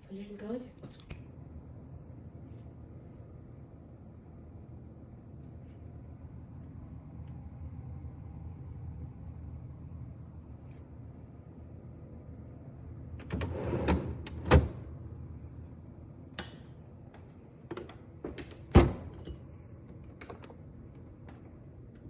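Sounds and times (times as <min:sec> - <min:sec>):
drawer sliding: 0:13.2 - 0:14.8.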